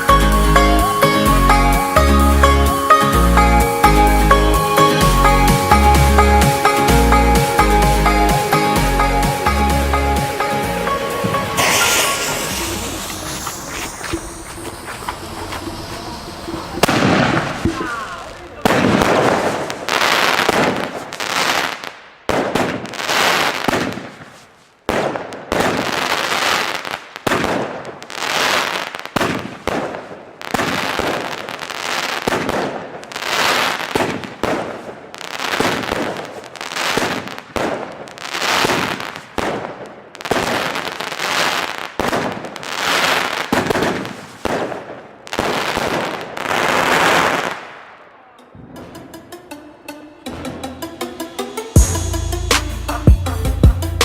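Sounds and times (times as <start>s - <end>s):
firework battery bangs: 11.2s - 24.3s, 32.2s - 48.0s.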